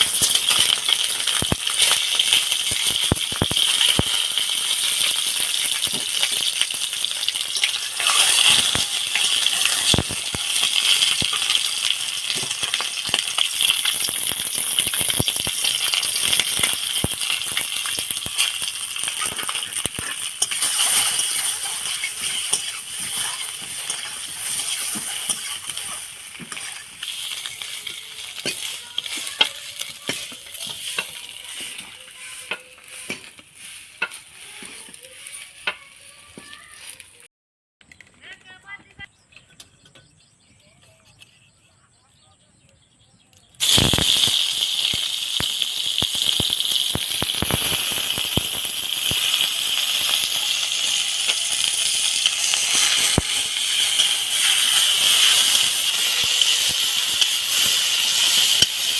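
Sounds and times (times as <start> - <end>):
spoon scraping a pan: 0.0 - 36.9, 43.6 - 58.9
food sizzling in hot oil: 0.0 - 37.2, 43.6 - 58.9.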